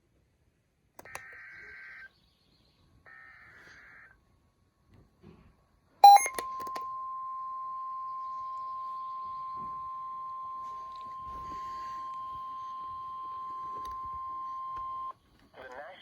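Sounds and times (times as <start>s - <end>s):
electronic beeps: 6.0s - 15.1s
steady high alarm tone: 6.0s - 15.1s.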